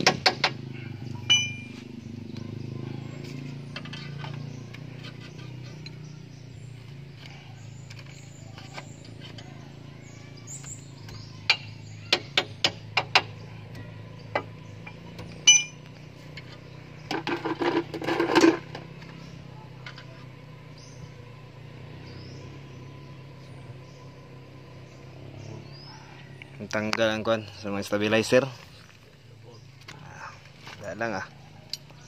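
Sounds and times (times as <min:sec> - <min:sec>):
metal tools clinking on metal: 0:01.2 - 0:01.8, 0:14.8 - 0:18.7, 0:31.6 - 0:32.0.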